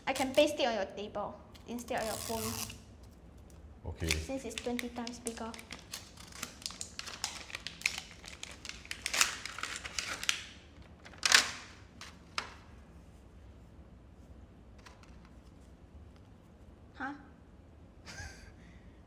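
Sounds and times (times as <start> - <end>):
packaging ripping: 2.0 - 2.8, 4.0 - 12.6
packaging crinkling: 4.0 - 12.6.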